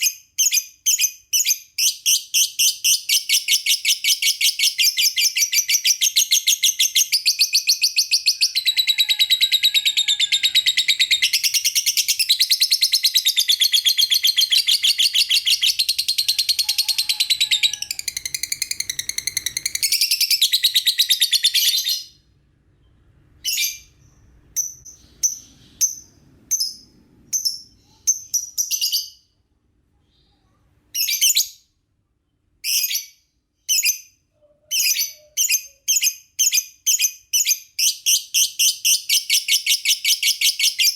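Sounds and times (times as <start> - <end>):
lovebird chattering trill: 2.4 - 22.1.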